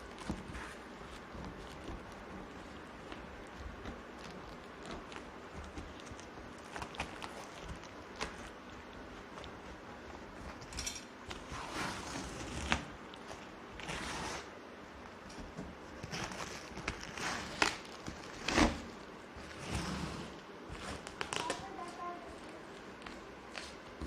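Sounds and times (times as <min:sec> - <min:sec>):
packaging rustling: 0:15.1 - 0:24.0.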